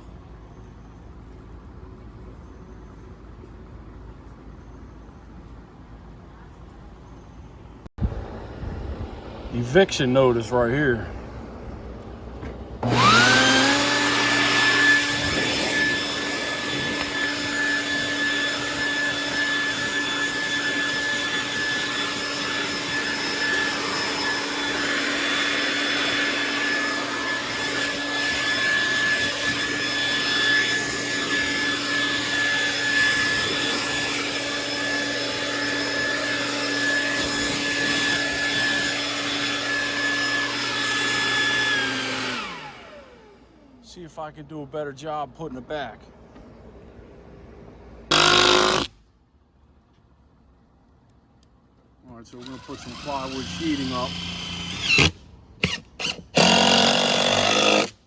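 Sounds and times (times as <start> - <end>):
vacuum motor whining: 12.0 - 43.8, 48.1 - 48.9.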